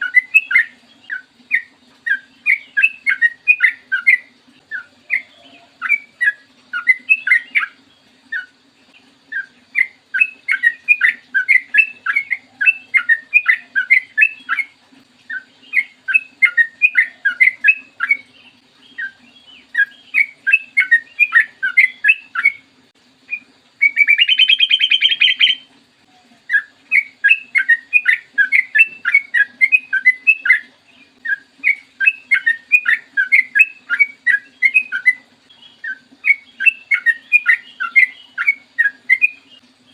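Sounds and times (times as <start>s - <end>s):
bird singing bubbling phrases: 0.0s - 39.9s
faint steady hum: 0.0s - 39.9s
harsh buzzing bird trill: 23.3s - 25.7s.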